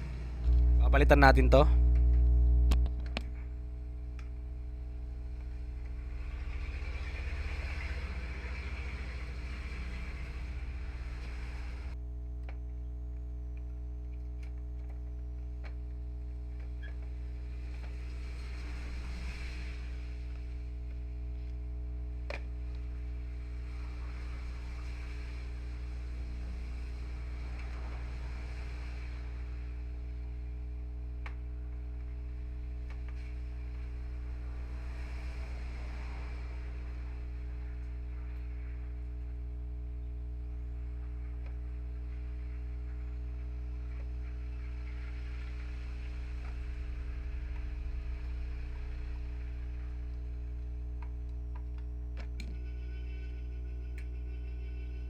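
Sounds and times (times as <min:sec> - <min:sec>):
electrical mains hum: 0:00.0 - 0:55.0
faint clicks: 0:01.8 - 0:03.5.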